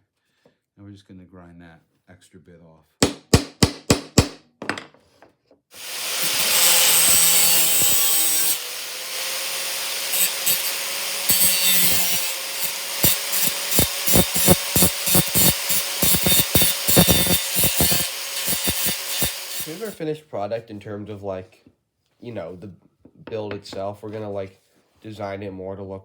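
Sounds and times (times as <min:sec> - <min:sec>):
sharp knocks: 0:03.0 - 0:05.0
power grinder grinding metal: 0:05.8 - 0:20.0.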